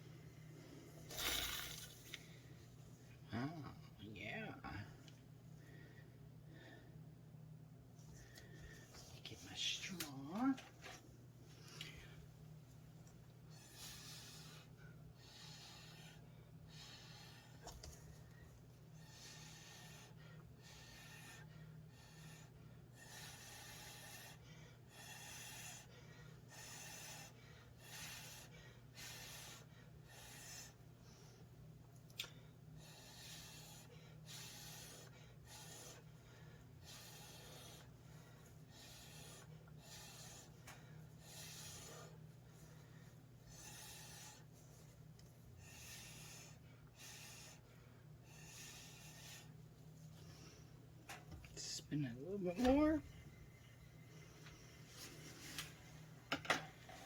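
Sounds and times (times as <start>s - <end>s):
faint low hum: 0.0s - 57.0s
breath puffs through a straw: 1.0s - 2.2s, 32.2s - 36.2s, 45.6s - 49.6s
breathy puffs through a straw: 1.1s - 2.0s, 32.2s - 37.9s.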